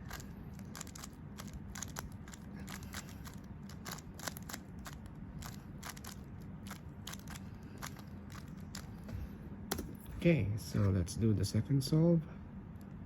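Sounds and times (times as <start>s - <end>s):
puzzle cube layers clicking: 0.0s - 8.9s.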